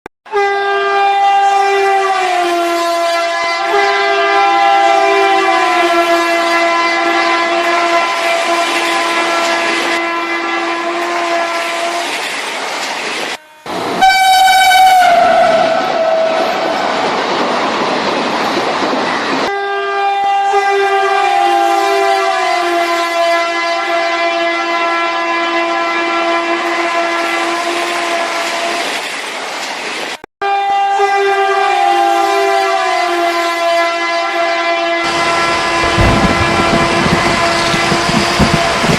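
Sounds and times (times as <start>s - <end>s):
train horn blasts: 0.2s - 12.2s, 13.3s - 17.0s, 19.4s - 28.9s, 30.4s - 38.9s
rumbling train noise: 3.0s - 19.6s, 35.0s - 38.9s.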